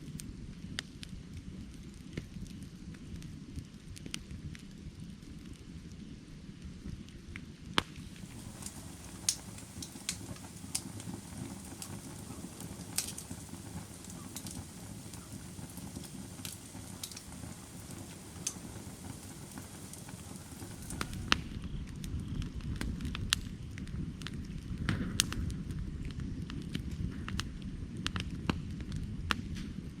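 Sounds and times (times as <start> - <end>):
fire crackling and popping: 0.0 - 30.0
rush of flame: 7.6 - 30.0.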